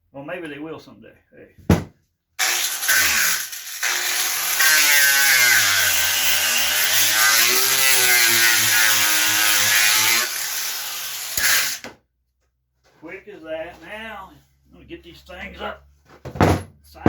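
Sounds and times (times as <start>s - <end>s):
power drill driving a fastener: 2.4s - 11.8s.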